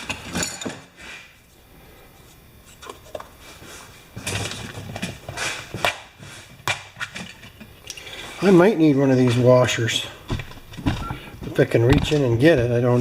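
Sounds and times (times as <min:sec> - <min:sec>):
tools knocking and clattering: 0:00.0 - 0:00.9, 0:10.3 - 0:13.0.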